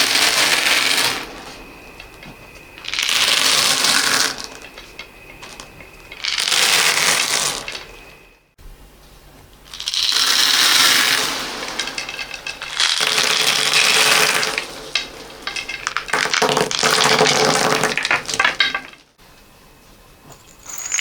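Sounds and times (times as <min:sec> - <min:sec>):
beads pouring rattle: 0:00.0 - 0:01.5, 0:02.8 - 0:08.0, 0:09.7 - 0:19.0, 0:20.6 - 0:21.0
beads clicking: 0:09.7 - 0:19.0.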